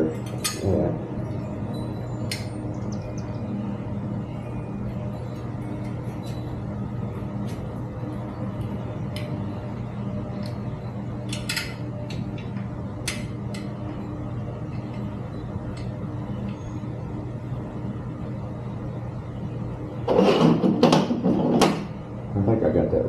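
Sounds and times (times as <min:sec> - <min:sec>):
steady low hum: 0:00.0 - 0:23.0
metallic clicks of bicycle parts: 0:11.3 - 0:13.7.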